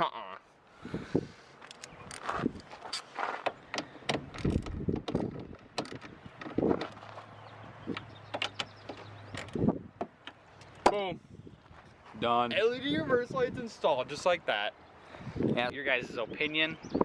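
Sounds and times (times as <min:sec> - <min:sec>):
car parts clicking and clunking: 0:01.6 - 0:11.1.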